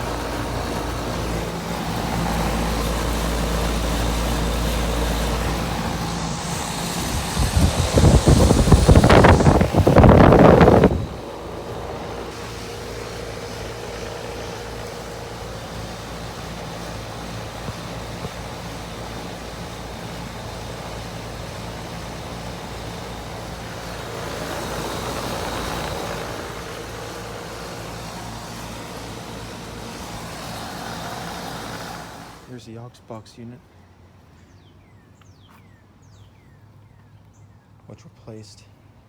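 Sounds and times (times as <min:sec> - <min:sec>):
condenser fan rushing: 0:00.0 - 0:32.7
air conditioner compressor hum: 0:00.0 - 0:33.0.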